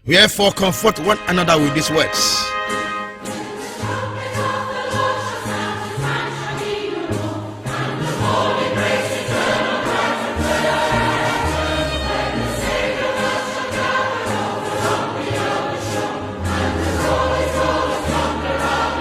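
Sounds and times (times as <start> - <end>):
held bass notes: 0.0 - 3.2
choir singing: 0.3 - 19.0.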